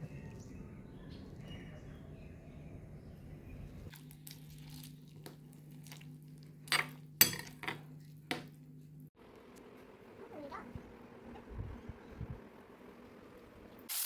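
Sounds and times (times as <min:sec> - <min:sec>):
low appliance hum: 0:00.0 - 0:13.9
dishes and utensils clinking: 0:06.7 - 0:08.5.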